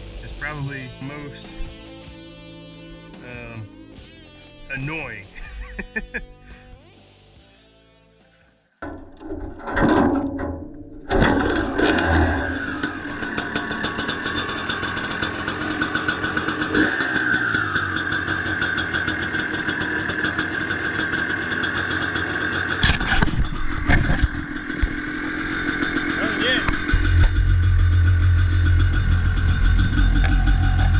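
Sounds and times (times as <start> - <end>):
engine throttle blips: 10.8 - 30.9
two-stroke engine running: 11.2 - 30.9.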